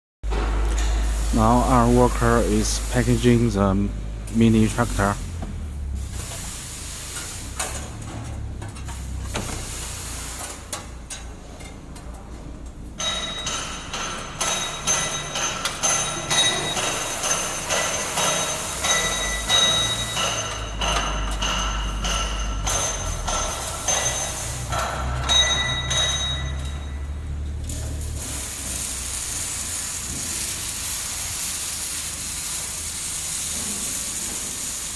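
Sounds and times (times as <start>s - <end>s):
clattering and knocking: 12.8s - 27.0s.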